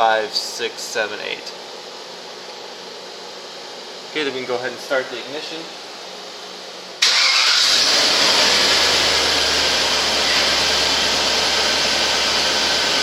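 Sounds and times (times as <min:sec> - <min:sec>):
car engine idling with hiss: 0:07.0 - 0:13.0.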